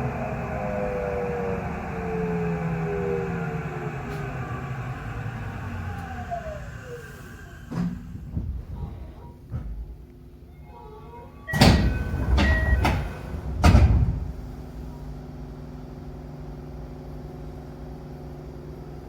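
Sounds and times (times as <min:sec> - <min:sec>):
sliding train doors rumbling: 0:00.0 - 0:10.2, 0:10.8 - 0:15.3
train car electrical hum: 0:00.0 - 0:19.0
doors shutting with heavy thud: 0:11.5 - 0:14.7.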